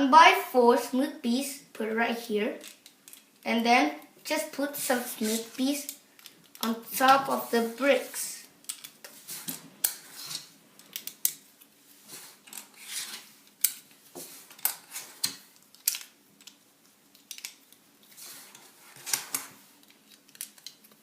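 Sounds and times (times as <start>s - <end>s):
plastic bricks clicking: 8.6s - 9.0s, 15.2s - 17.7s, 19.1s - 21.0s.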